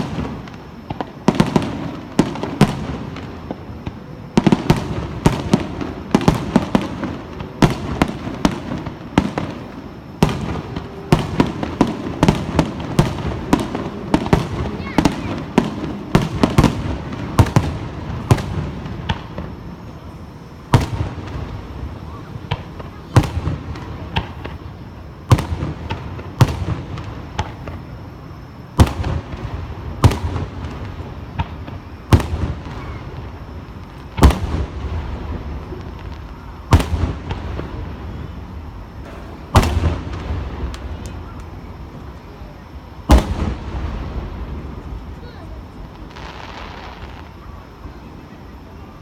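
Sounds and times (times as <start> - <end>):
firework shells bursting: 28.8 - 42.3.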